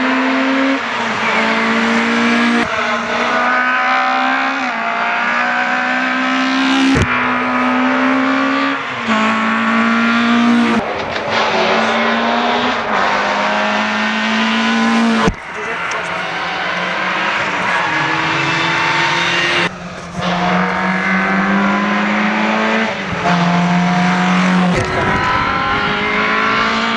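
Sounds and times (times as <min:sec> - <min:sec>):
rally car engines revving: 0:00.0 - 0:26.9
tyre noise: 0:00.2 - 0:04.2, 0:05.7 - 0:22.3.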